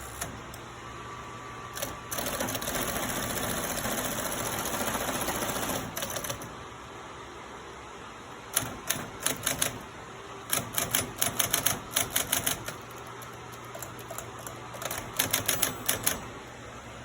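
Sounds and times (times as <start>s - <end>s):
typewriter keys clacking: 10.5s - 16.2s.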